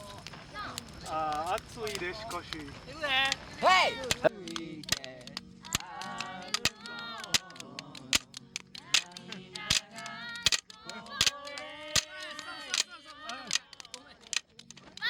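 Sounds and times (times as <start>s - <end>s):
bonfire crackling: 0.0s - 15.0s
wood popping: 0.0s - 15.0s
group singing: 3.4s - 15.0s.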